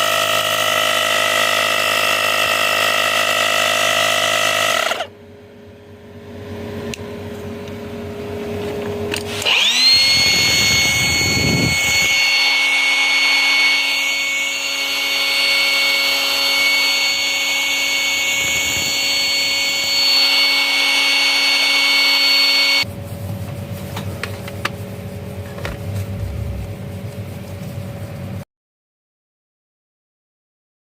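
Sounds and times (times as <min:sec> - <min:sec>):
tyre inflator motor whining: 0:00.0 - 0:05.2, 0:08.5 - 0:22.9
mechanical rustling: 0:21.8 - 0:28.4.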